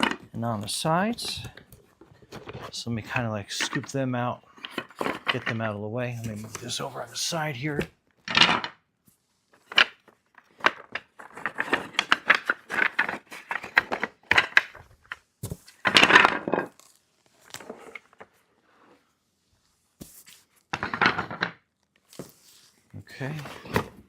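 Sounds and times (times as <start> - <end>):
wooden pieces clattering: 0.0 - 0.5, 3.5 - 3.9, 4.5 - 5.7, 8.2 - 8.8, 9.5 - 16.9, 20.7 - 21.7
wood scraping: 0.0 - 8.8, 9.5 - 14.8, 17.4 - 19.0.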